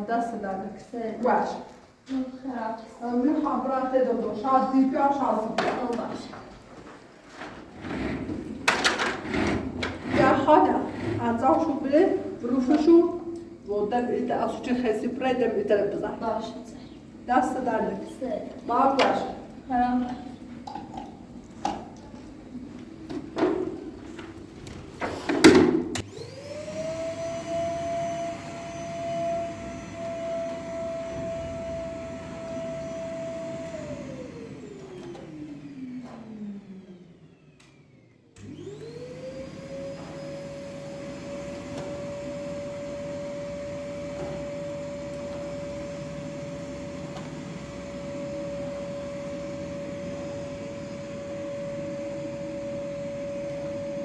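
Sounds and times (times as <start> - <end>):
electric motor whining: 26.0 - 54.0.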